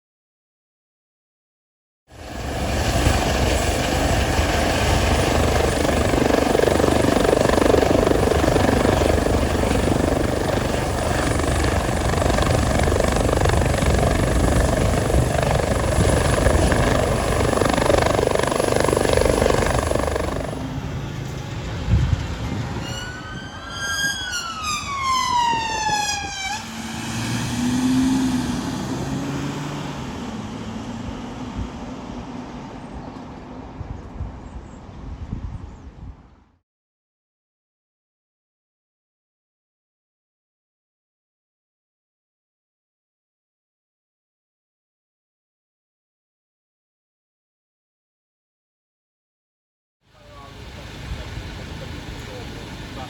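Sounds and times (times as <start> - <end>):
vehicle engine: 15.5 - 33.6
siren winding down: 22.6 - 28.5.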